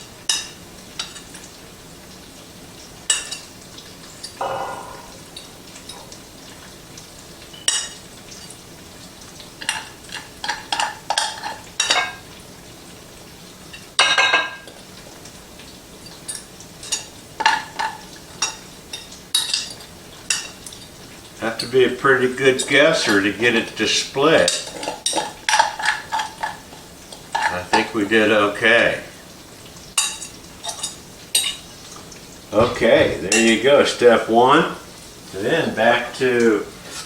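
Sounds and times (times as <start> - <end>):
utensil scraping and clinking pot: 4.1 - 6.8, 9.6 - 12.3, 16.1 - 20.9, 21.5 - 28.8, 30.0 - 34.4, 35.9 - 37.0.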